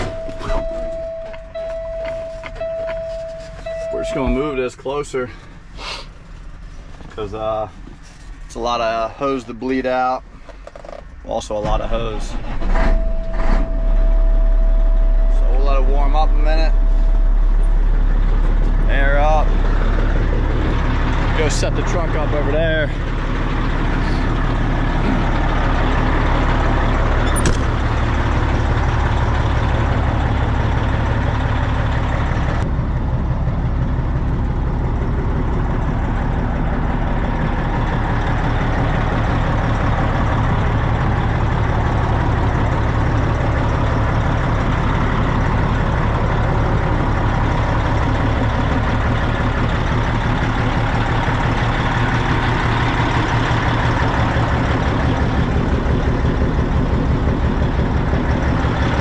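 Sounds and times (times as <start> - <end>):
diesel truck engine idling: 0.0 - 59.0.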